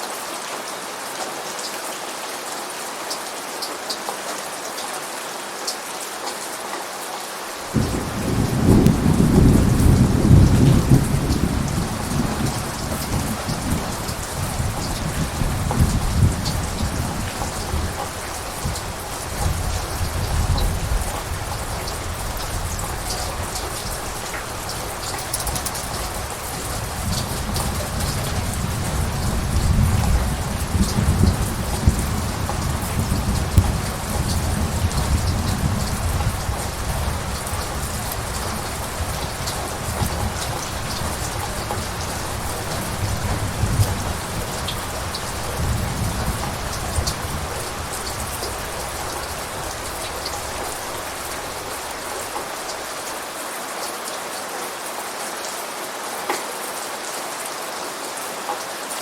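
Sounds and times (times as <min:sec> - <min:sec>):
steady rain falling: 0:00.0 - 0:59.0
water drips: 0:07.6 - 0:28.9
thunder rumbling: 0:07.7 - 0:52.4.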